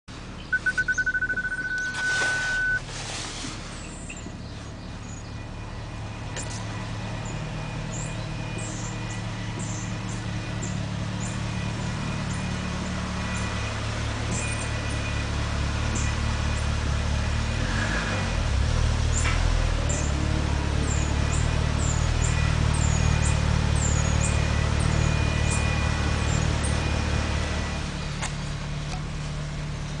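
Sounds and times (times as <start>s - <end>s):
car engine drone: 0.0s - 30.0s
faint high whine: 0.5s - 2.8s
short high chirps: 0.5s - 2.8s.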